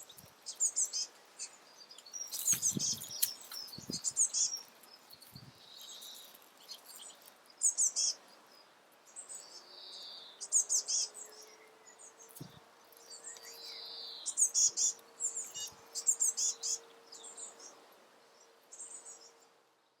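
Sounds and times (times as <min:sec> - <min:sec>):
young woodpecker begging calls: 0:02.3 - 0:04.6, 0:14.2 - 0:16.8.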